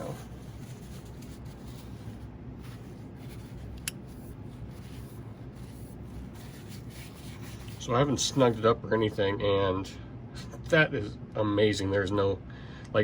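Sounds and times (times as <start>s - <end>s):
faint rubbing and handling: 0.0s - 8.8s
steady low hum: 0.0s - 13.0s.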